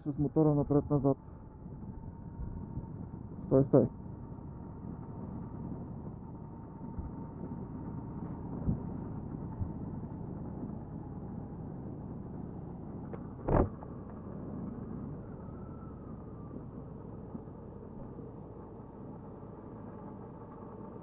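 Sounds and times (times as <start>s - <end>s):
low road rumble: 0.0s - 21.0s
motorcycle engine running: 1.2s - 21.0s
short thump: 13.1s - 13.7s.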